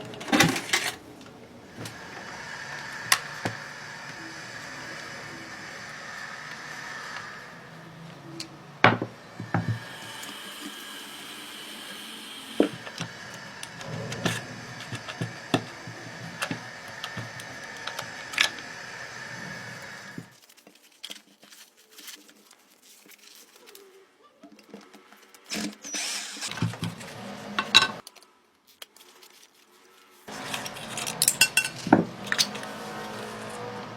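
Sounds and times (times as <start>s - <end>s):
steady hum: 0.0s - 20.3s.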